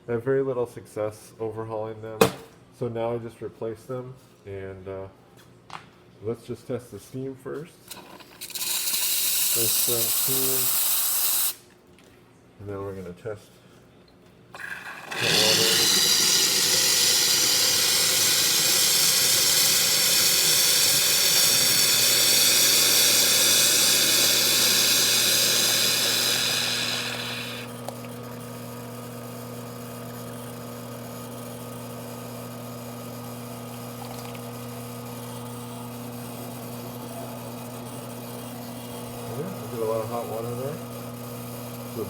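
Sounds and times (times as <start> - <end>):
hot water tap hissing rush: 7.9 - 11.6, 14.6 - 28.2.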